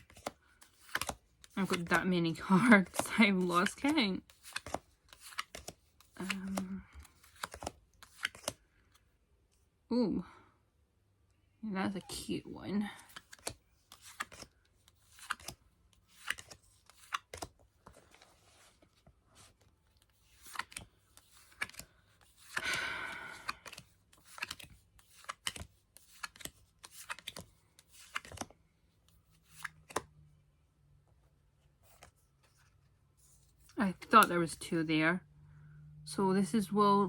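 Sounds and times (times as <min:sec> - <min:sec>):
cards rustling: 0:00.0 - 0:09.1, 0:12.9 - 0:30.2, 0:31.5 - 0:34.6
trading cards clicking and flicking: 0:04.4 - 0:08.6, 0:22.4 - 0:28.5.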